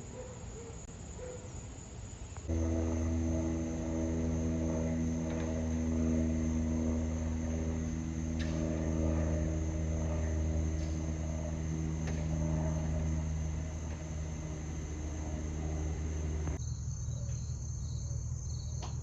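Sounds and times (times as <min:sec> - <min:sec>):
aircraft engines droning: 0:02.2 - 0:16.6.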